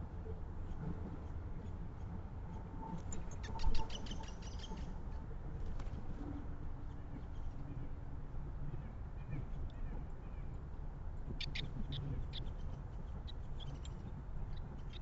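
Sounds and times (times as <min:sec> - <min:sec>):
steady low background noise: 0:00.0 - 0:15.0
birds calling: 0:11.4 - 0:15.0.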